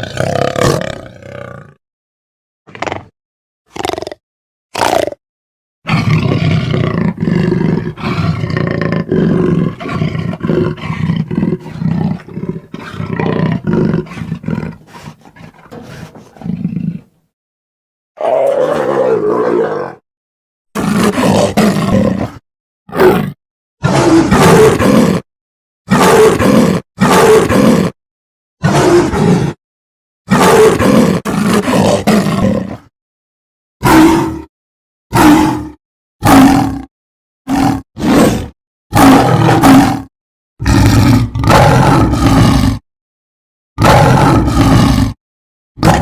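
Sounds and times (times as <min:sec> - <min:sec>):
wolf growling: 0:05.9 - 0:17.2, 0:18.2 - 0:20.0.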